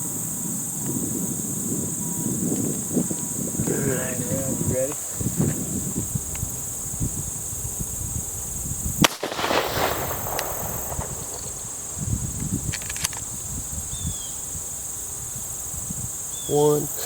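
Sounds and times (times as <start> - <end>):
high insect drone: 0.0 - 17.0
shotgun shot with echo: 9.0 - 11.6.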